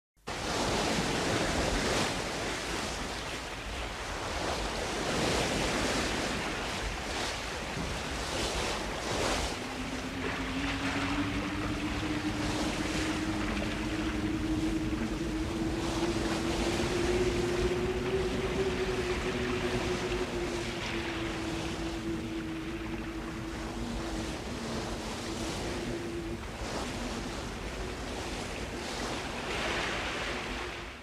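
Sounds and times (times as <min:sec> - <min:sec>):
low hum rising in pitch: 0:08.5 - 0:29.6.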